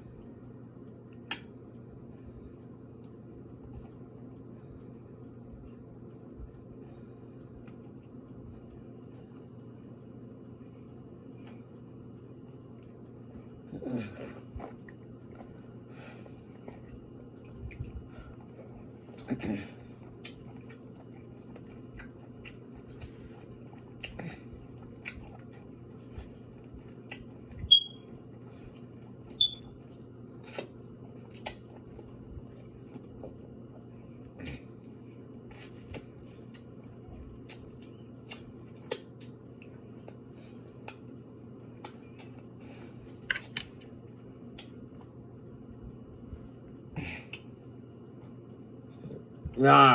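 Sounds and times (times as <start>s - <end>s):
steady low hum: 0.0s - 49.9s
lip smacks: 1.1s - 2.1s, 19.3s - 24.3s, 24.9s - 27.5s, 30.4s - 33.4s, 34.2s - 43.9s, 44.5s - 45.1s, 47.2s - 47.5s
close-miked chewing: 5.4s - 45.2s.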